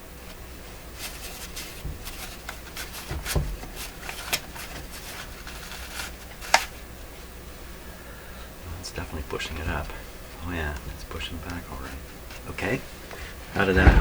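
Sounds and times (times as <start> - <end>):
cloth rustling and scraping: 0.0 - 14.0
dull knock: 1.7 - 4.9, 13.1 - 14.0.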